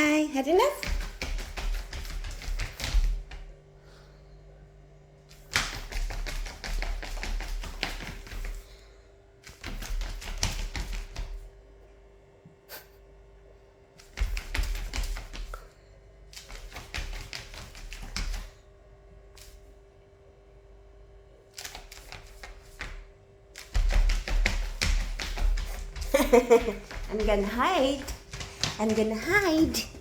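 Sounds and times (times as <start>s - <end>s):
rapid scratchy tapping: 23.6s - 30.0s.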